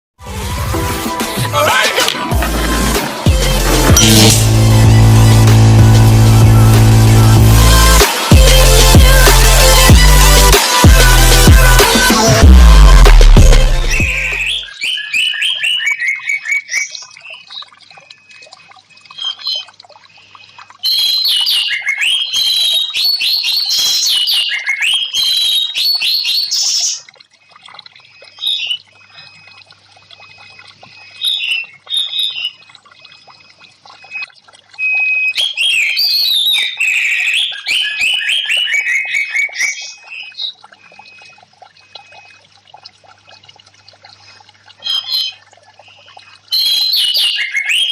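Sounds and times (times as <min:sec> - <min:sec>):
bird warbling song: 0:14.0 - 0:42.9, 0:43.8 - 0:47.9.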